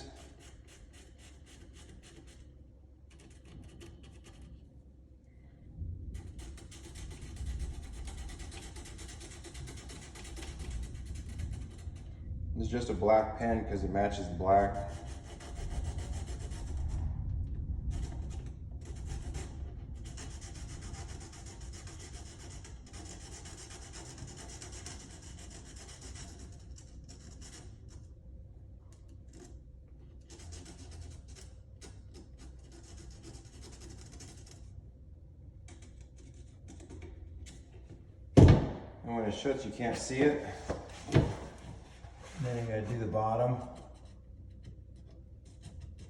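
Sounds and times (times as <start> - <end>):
pen rubbing on wood: 0.0 - 2.5, 3.1 - 4.6, 6.2 - 12.1, 14.7 - 16.9, 18.0 - 27.8, 30.2 - 34.6, 39.9 - 46.0.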